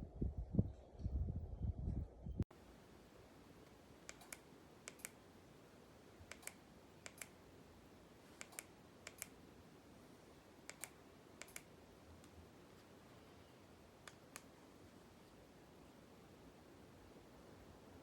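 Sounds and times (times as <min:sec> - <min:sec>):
faint sharp clicks in pairs: 0:03.6 - 0:05.2, 0:06.3 - 0:07.4, 0:08.4 - 0:09.4, 0:10.7 - 0:12.4, 0:14.0 - 0:14.5.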